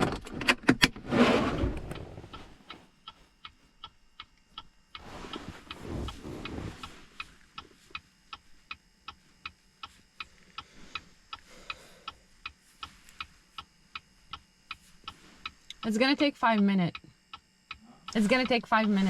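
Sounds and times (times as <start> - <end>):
steady ringing ticks: 2.7 - 5.0, 6.8 - 19.0.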